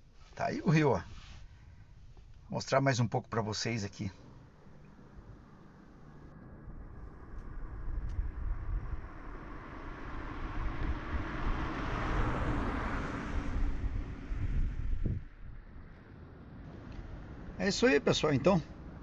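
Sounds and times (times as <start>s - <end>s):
vehicle passing on highway: 4.2s - 19.0s.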